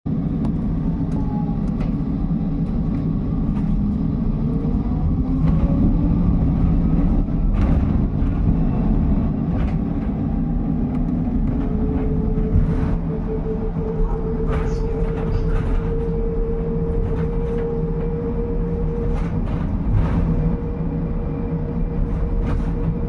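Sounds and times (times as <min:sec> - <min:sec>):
bus cabin rumble: 0:00.1 - 0:23.0
rattles and clicks: 0:05.3 - 0:20.8.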